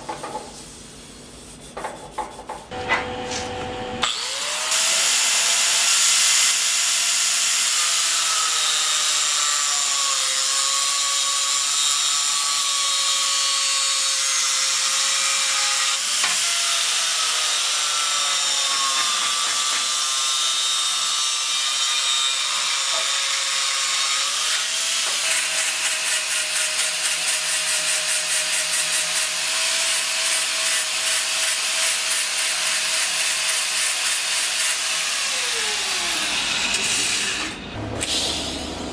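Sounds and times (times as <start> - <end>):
power tool working wood: 2.7 - 11.0, 31.1 - 38.9.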